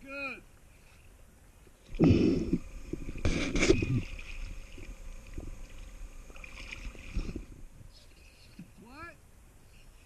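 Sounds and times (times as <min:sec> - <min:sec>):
underwater regulator bubbles rushing: 0:01.9 - 0:07.8.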